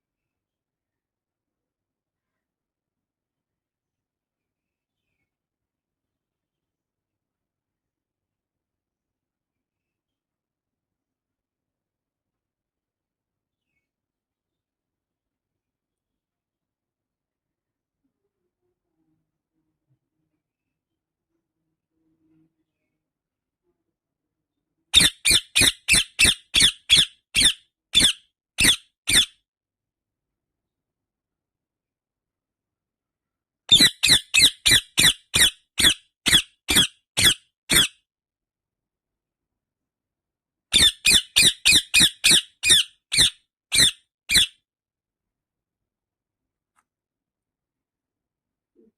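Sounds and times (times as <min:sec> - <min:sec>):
parakeet high-pitched calls: 0:25.0 - 0:29.4, 0:33.7 - 0:38.0, 0:40.8 - 0:44.6.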